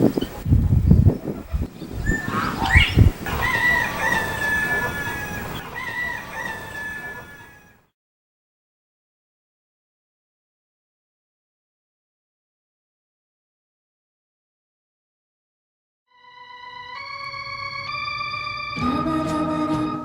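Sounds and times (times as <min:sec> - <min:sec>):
rooster crowing: 0:02.2 - 0:07.8.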